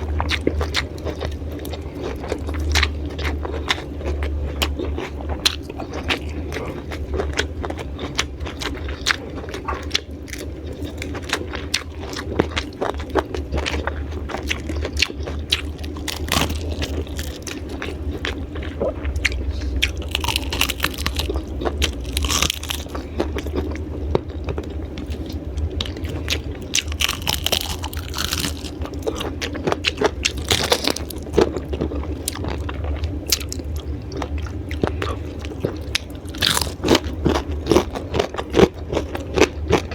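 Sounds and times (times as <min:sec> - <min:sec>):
crunching raw vegetables: 0:00.0 - 0:39.9
steady low hum: 0:00.0 - 0:39.9.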